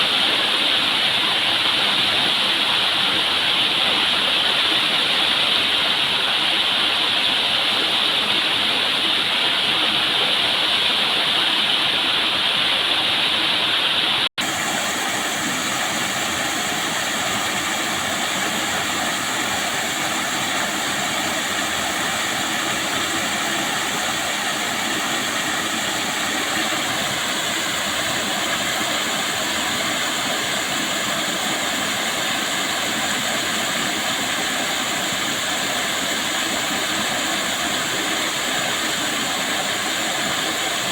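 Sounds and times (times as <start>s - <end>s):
waterfall rushing: 11.6s - 40.9s.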